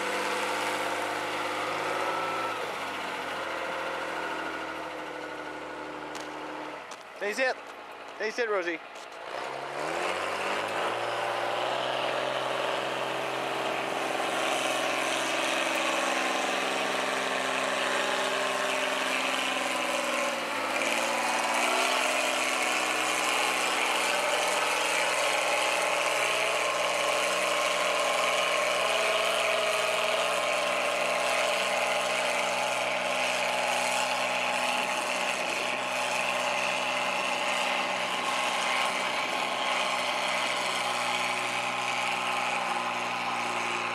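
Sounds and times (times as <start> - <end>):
engine running: 0.0 - 43.9.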